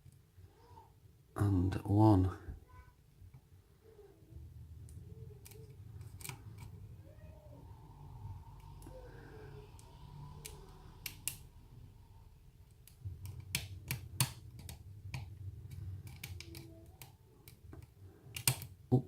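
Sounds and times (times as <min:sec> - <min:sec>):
lock pick clicking pins: 0:12.8 - 0:18.8.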